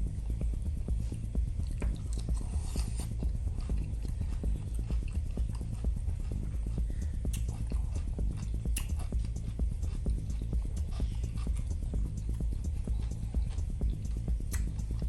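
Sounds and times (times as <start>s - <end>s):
low steady hum: 0.0s - 15.0s
close chewing with wet mouth clicks: 1.6s - 15.0s.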